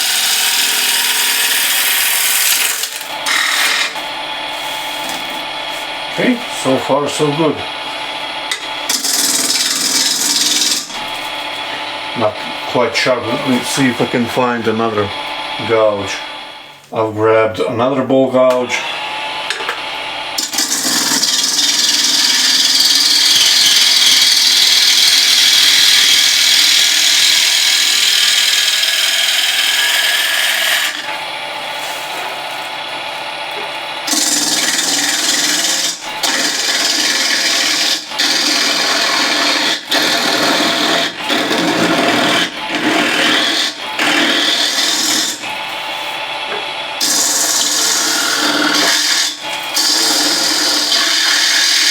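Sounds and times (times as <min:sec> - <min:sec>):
gouge scraping spinning wood: 0:00.0 - 0:16.7, 0:18.9 - 0:51.9.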